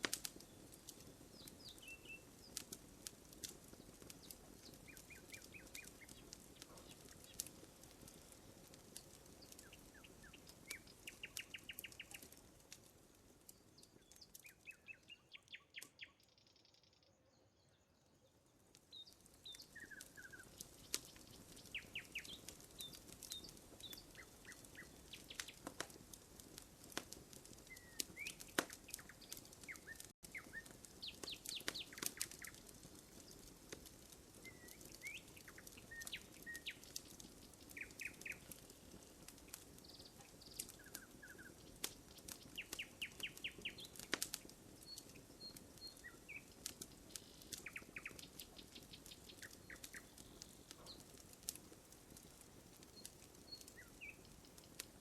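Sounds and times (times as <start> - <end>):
campfire crackling and popping: 0.0 - 17.0, 18.2 - 55.0
small birds chirping: 0.0 - 55.0.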